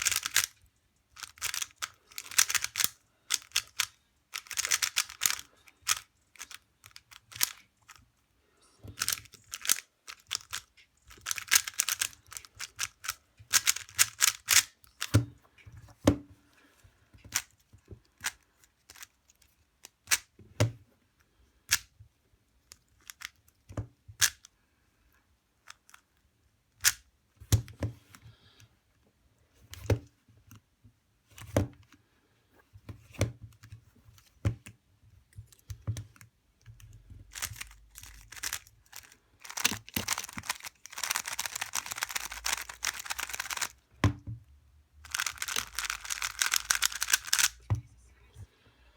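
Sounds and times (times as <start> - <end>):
puzzle cube turn clicks: 0.0 - 8.0, 8.9 - 15.2, 35.5 - 43.8, 45.0 - 47.7.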